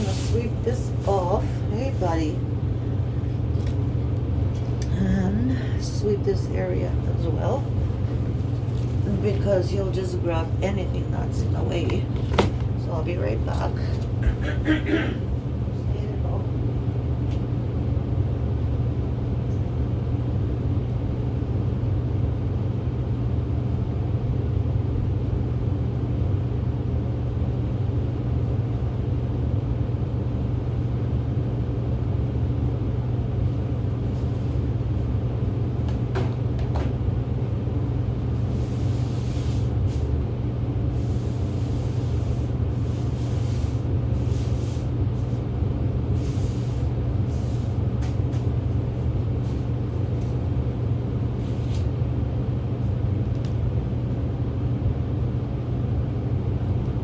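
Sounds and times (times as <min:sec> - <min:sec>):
short hissing rustles: 0:00.0 - 0:02.4, 0:38.3 - 0:40.2, 0:40.8 - 0:50.5, 0:51.3 - 0:52.0
low mechanical hum: 0:00.0 - 0:57.0.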